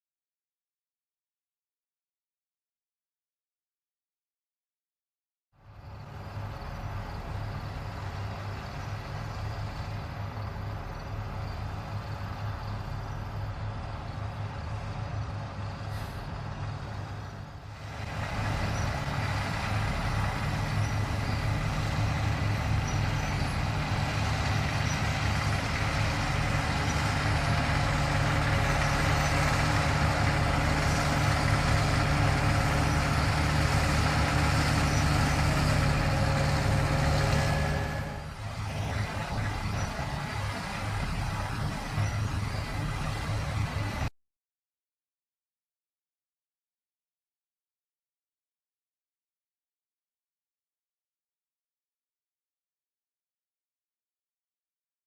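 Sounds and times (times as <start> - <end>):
combine harvester engine hum: 5.6 - 44.1.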